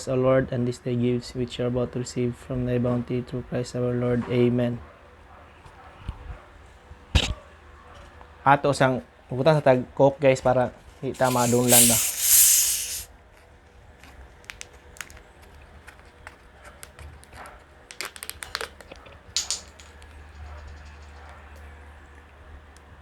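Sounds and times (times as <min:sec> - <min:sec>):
bottle opening fizz: 0:11.2 - 0:13.1
small clicks and crackles: 0:14.5 - 0:21.3.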